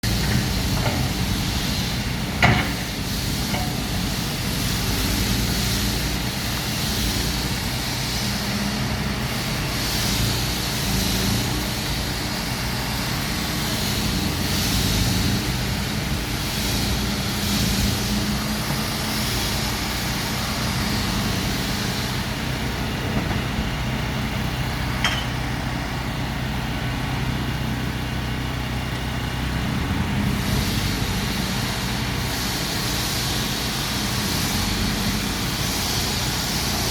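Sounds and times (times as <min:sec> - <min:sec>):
heavy diesel machinery running: 0:00.0 - 0:36.9
sharp metal clank: 0:25.0 - 0:25.4.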